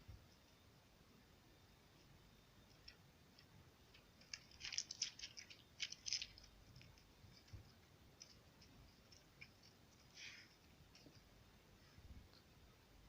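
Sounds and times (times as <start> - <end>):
sticky clicks and crackling pops: 2.7 - 11.3.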